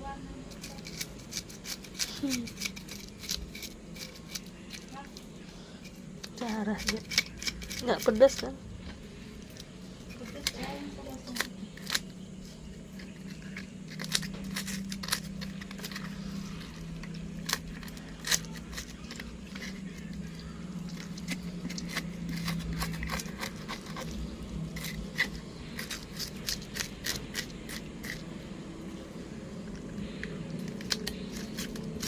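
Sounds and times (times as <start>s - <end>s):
steady low hum: 0.0s - 32.0s
person eating crunching: 12.8s - 28.3s, 29.6s - 32.0s.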